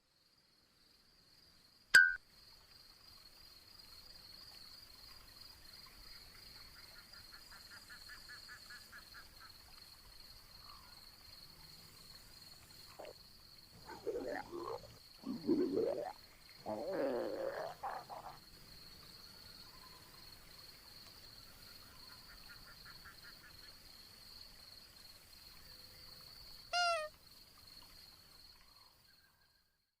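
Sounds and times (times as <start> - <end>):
steady high-pitched tone: 2.0 - 2.2
animal stomach growling: 13.8 - 18.4.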